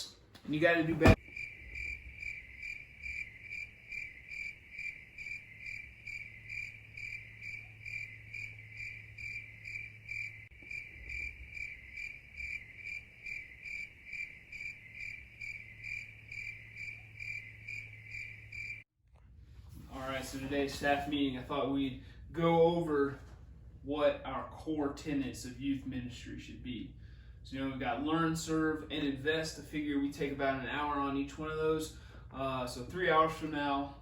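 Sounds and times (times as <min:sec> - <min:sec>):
crickets chirping: 0:01.1 - 0:18.8.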